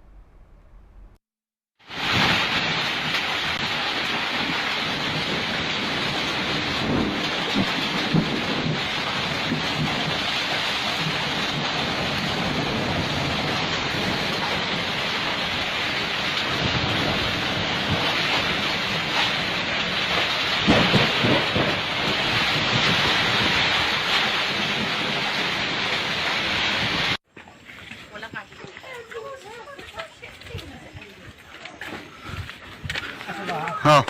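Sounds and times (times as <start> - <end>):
heavy rain falling: 1.8 - 27.2, 32.1 - 34.0.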